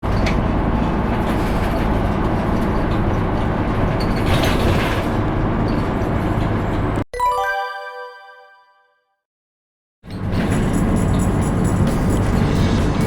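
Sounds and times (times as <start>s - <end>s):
bus engine and road rumble: 0.0s - 7.0s, 10.1s - 13.0s
ringing chime: 7.2s - 8.8s.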